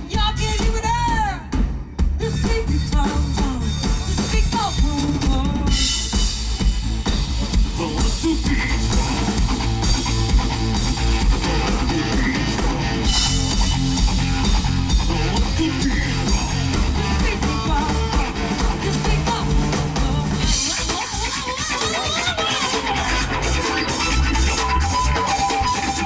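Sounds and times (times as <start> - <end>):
live band playing: 0.0 - 26.0
guitar line: 8.5 - 26.0.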